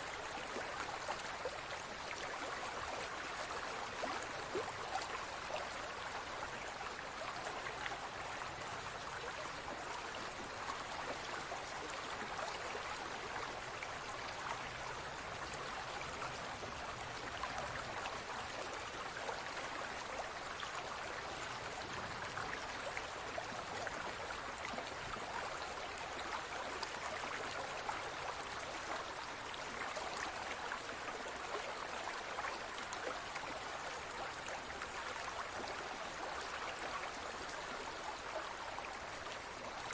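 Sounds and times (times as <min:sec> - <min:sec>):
aquarium water trickling and bubbling: 0:00.0 - 0:39.9.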